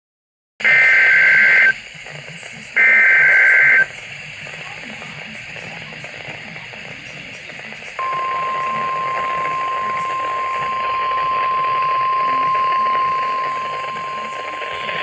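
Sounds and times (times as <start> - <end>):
steady alarm tone: 0.6 - 1.7, 2.8 - 3.9, 8.0 - 15.0
radio hiss: 0.6 - 15.0.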